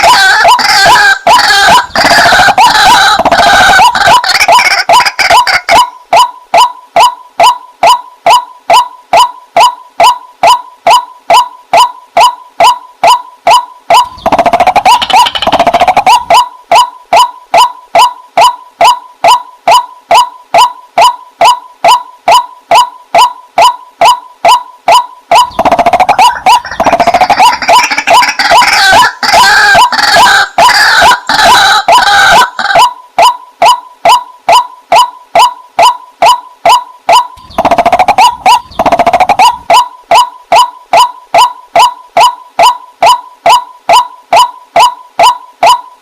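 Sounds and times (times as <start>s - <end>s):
harsh bird chattering: 25.5s - 28.8s, 37.4s - 39.6s.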